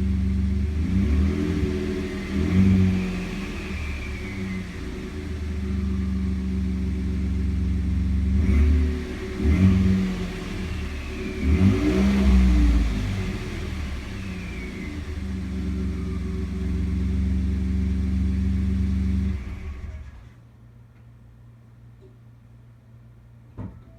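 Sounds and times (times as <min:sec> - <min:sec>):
engine revving blips: 0:08.4 - 0:15.4.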